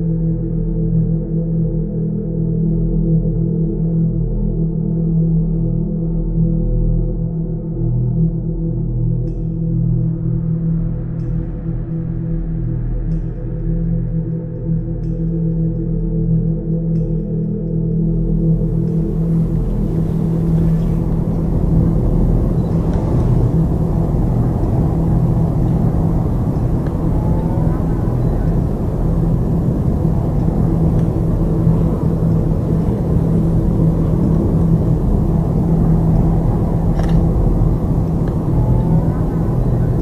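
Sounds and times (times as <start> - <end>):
moving vehicle rumble: 18.4 - 40.0.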